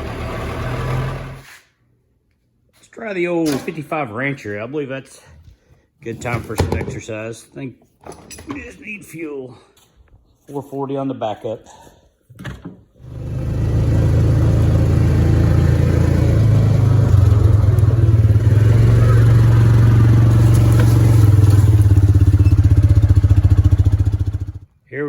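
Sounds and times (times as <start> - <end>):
engine running at low revs: 0.0 - 1.4, 13.0 - 24.6.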